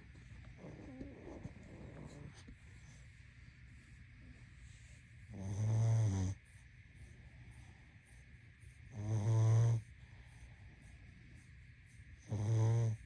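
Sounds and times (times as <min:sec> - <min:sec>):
dog snoring: 0:00.4 - 0:02.5, 0:05.3 - 0:06.6, 0:08.9 - 0:10.4, 0:12.2 - 0:13.0.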